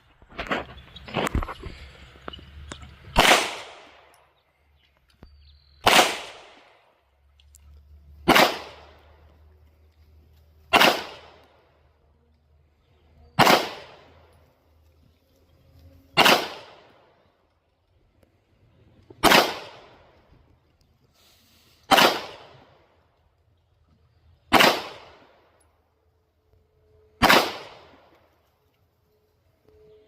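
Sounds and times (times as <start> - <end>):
pistol shots echoing: 3.2 - 4.2, 5.8 - 6.8, 8.2 - 9.0, 10.7 - 11.5, 13.4 - 14.2, 16.2 - 17.0, 19.2 - 20.0, 21.9 - 22.7, 24.5 - 25.4, 27.2 - 28.1.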